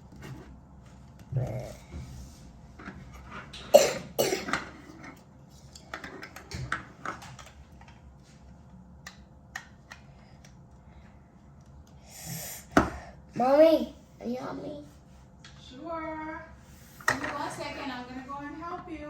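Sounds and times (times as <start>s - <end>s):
person coughing: 3.7s - 4.6s.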